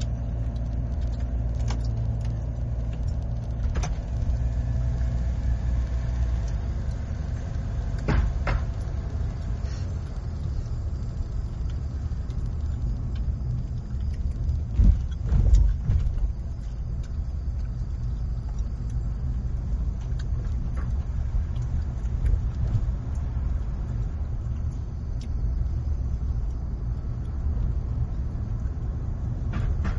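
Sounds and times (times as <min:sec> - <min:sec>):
car engine and tyre rumble: 0:00.0 - 0:29.9
rattles and clicks: 0:00.0 - 0:29.9
wheel thump over bump: 0:08.0 - 0:08.8, 0:14.7 - 0:16.4, 0:29.5 - 0:29.9.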